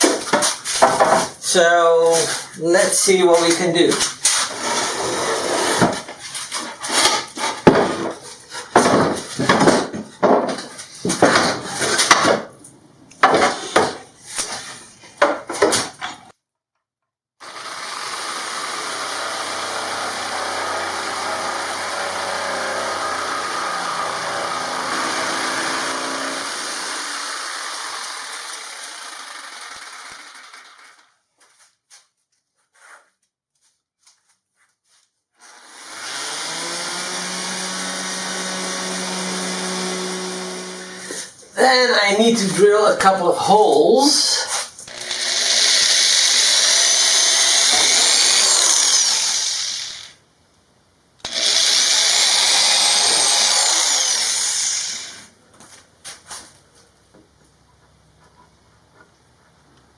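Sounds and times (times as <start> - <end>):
electric jigsaw cutting: 4.5 - 6.0, 17.4 - 31.1, 35.4 - 41.3, 44.8 - 50.2, 51.2 - 55.3
sharp knocks: 7.6 - 12.5
power tool humming: 17.4 - 30.9, 35.5 - 41.3, 44.8 - 50.2, 51.2 - 55.3.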